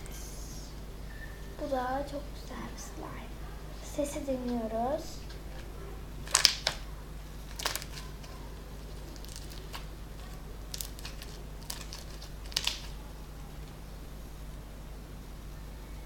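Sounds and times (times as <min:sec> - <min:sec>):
slime popping and crackling: 0:06.2 - 0:06.8, 0:07.4 - 0:13.0.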